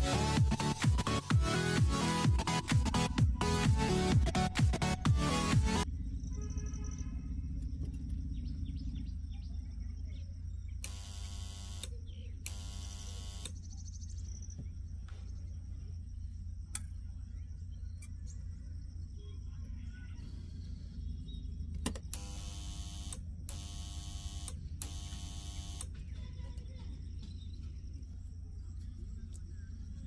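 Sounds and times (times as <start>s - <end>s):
low electrical hum: 5.8s - 30.0s
buzzes: 10.8s - 13.6s, 22.0s - 25.9s
sharp clicks: 10.8s - 13.6s, 21.7s - 26.0s.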